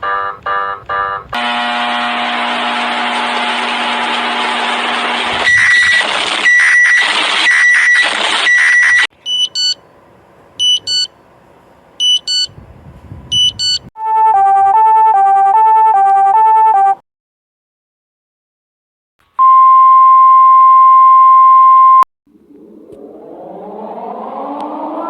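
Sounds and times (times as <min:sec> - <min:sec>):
faint hum: 0:22.3 - 0:25.0.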